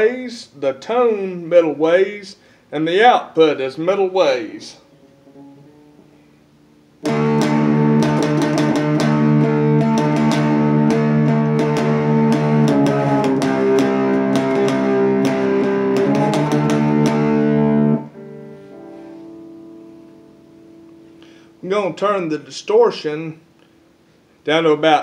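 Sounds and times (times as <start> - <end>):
distorted electric guitar chords: 4.8 - 21.6.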